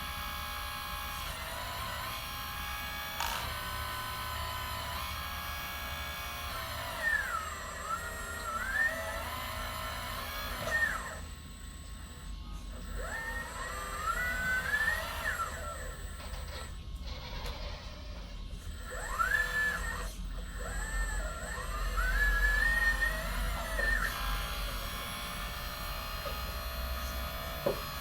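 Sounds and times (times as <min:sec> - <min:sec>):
electric motors whining: 0:00.0 - 0:28.0.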